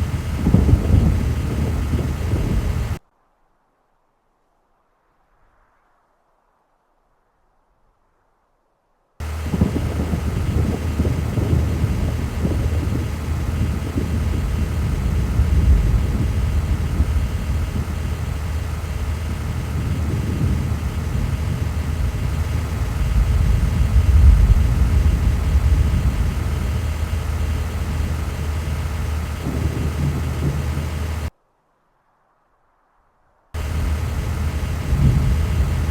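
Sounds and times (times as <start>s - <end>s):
vehicle engine and road noise: 0.0s - 3.0s, 9.2s - 31.3s, 33.6s - 35.9s.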